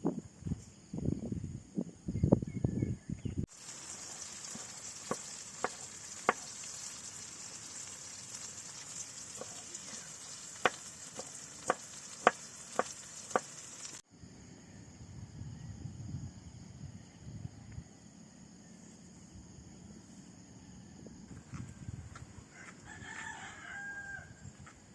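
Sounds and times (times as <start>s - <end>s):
food sizzling in a pan: 3.5s - 14.0s
oil spattering pops: 3.5s - 14.0s.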